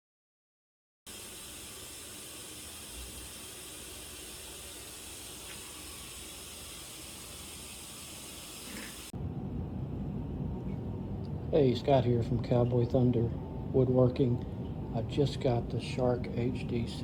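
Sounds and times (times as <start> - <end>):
steady hiss: 1.1 - 9.1
low hum: 9.1 - 15.8.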